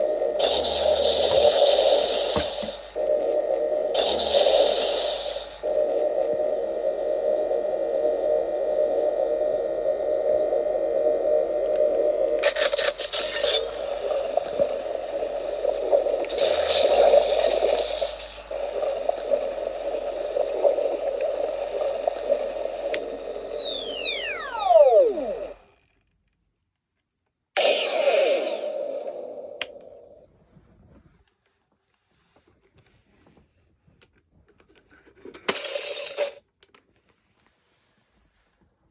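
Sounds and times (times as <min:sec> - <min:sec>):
toy buzzing with crackle: 0:00.0 - 0:03.0, 0:11.6 - 0:25.9
falling power-down whine: 0:00.0 - 0:25.8, 0:27.6 - 0:30.2.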